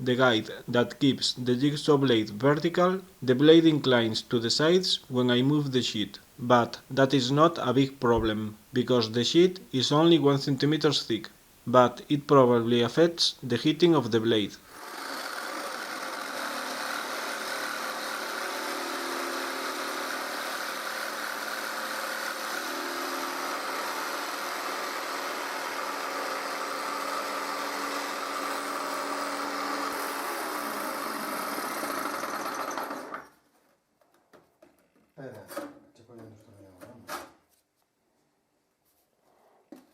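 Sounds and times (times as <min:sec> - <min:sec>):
jigsaw sawing through metal sheet: 0:14.8 - 0:33.3.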